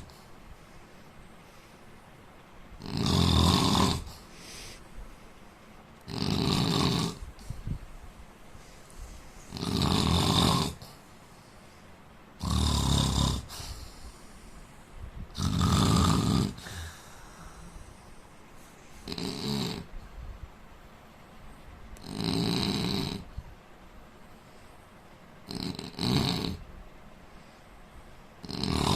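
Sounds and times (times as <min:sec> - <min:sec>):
quiet breathing: 0:00.0 - 0:02.8, 0:03.8 - 0:06.1, 0:06.7 - 0:28.9
man snoring: 0:02.8 - 0:04.3, 0:06.1 - 0:07.4, 0:09.5 - 0:11.0, 0:12.4 - 0:14.0, 0:15.3 - 0:17.7, 0:19.0 - 0:19.9, 0:22.0 - 0:23.3, 0:25.4 - 0:26.7, 0:28.4 - 0:28.9.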